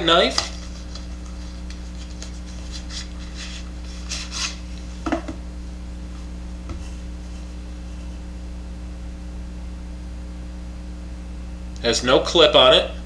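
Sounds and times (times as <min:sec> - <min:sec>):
steady electrical hum: 0:00.0 - 0:13.0
pocket knife rubbing and scraping: 0:00.3 - 0:05.1.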